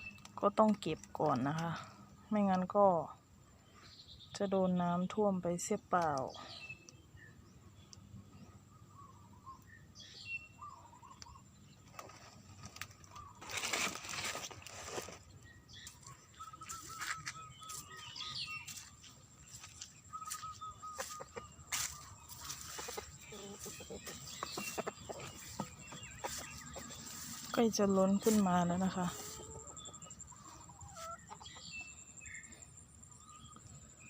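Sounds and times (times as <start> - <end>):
faint bird chirps: 6.3 - 14.4, 15.0 - 34.0
rustling: 11.9 - 15.4.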